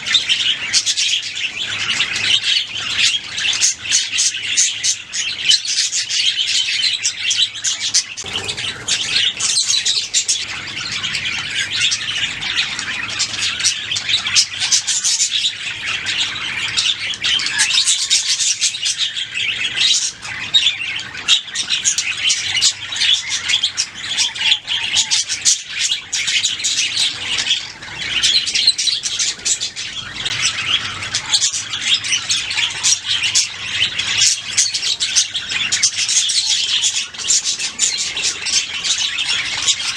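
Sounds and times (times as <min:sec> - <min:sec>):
budgerigars chirping: 0:00.0 - 0:39.9
budgerigar squawks: 0:07.9 - 0:19.1.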